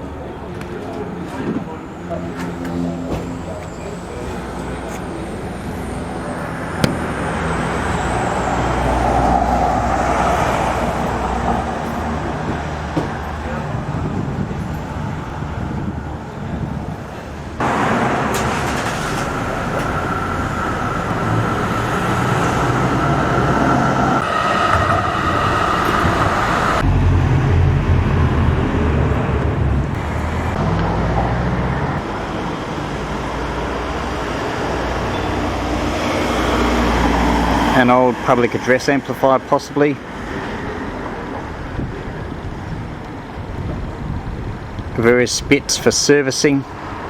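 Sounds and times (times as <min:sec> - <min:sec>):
street traffic passing: 0:00.0 - 0:47.0
vehicle high whine: 0:00.0 - 0:47.0
heavy deep rumble: 0:01.2 - 0:32.3.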